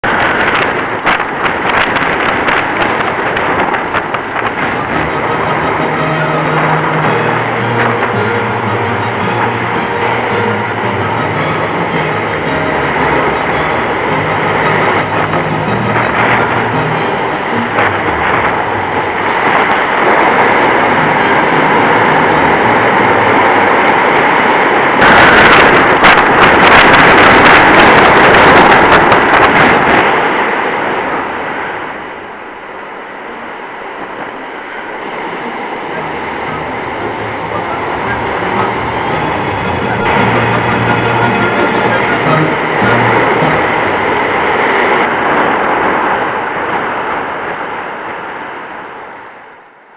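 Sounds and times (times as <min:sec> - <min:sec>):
strong wind: 0:00.0 - 0:49.9
sea waves breaking: 0:26.4 - 0:46.1.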